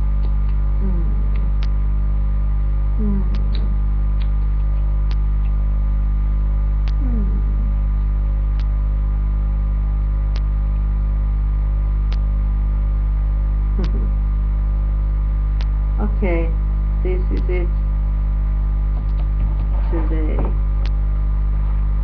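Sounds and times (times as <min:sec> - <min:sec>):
electrical mains hum: 0:00.0 - 0:22.0
person humming: 0:00.8 - 0:01.6, 0:03.0 - 0:03.8, 0:06.9 - 0:07.8.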